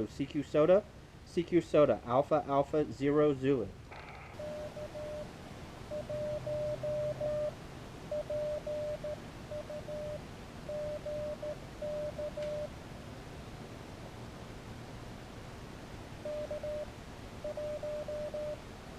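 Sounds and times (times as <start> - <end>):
morse code tone beeping: 4.4 - 12.7, 16.2 - 18.6.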